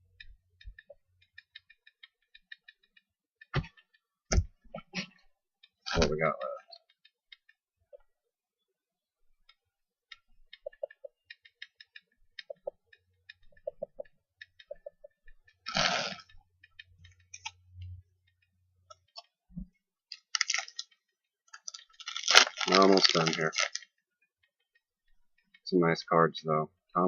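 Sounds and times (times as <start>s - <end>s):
cards rustling: 20.1s - 20.9s, 21.5s - 23.9s.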